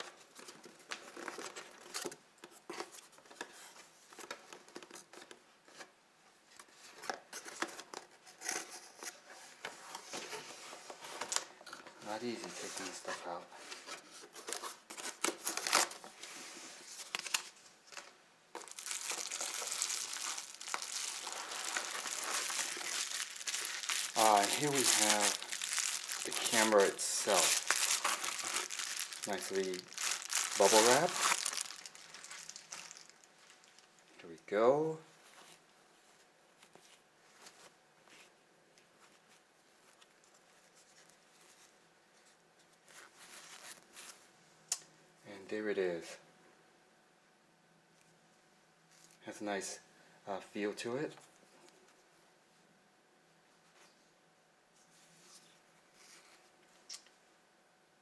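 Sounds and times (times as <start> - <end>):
bubble wrap and plastic rustling: 0.0 - 5.4, 6.7 - 34.3, 39.0 - 44.2
packaging clicks and rustles: 17.0 - 33.9
plastic wrap crinkling: 17.1 - 34.1.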